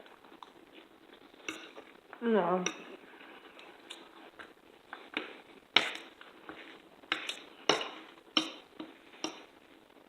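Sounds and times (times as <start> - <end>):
cutlery clinking against a plate: 1.4 - 1.9, 2.6 - 3.0, 5.8 - 6.1, 7.1 - 9.5.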